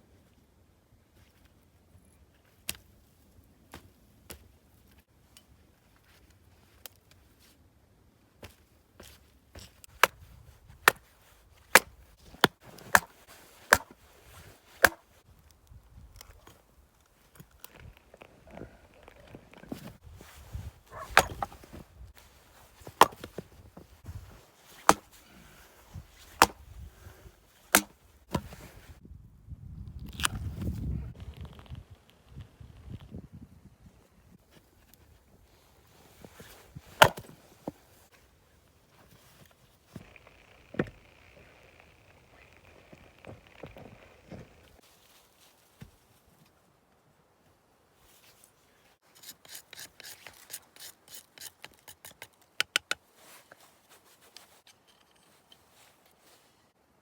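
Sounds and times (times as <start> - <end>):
axe chopping wood: 10.8 - 11.1, 11.7 - 14.0, 14.8 - 15.1, 20.9 - 21.7, 22.9 - 23.5, 24.8 - 25.2, 26.2 - 26.7, 27.7 - 28.6, 37.0 - 37.8.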